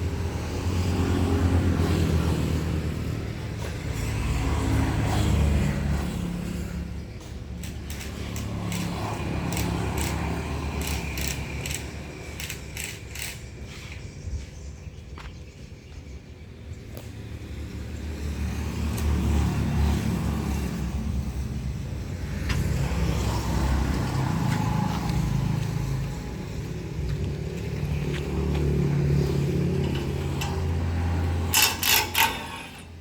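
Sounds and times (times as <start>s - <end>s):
sharp metallic clicks: 7.2s - 13.6s, 27.5s - 33.0s
farm machine engine running: 22.2s - 33.0s.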